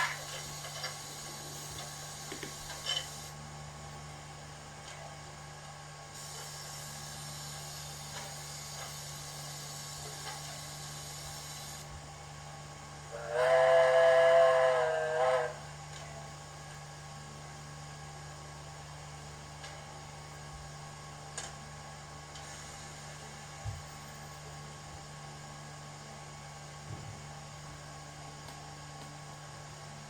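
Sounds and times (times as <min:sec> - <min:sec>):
hiss of steam: 0:00.0 - 0:03.3, 0:06.1 - 0:11.9, 0:22.4 - 0:23.1
steam whistle blast: 0:13.1 - 0:15.7.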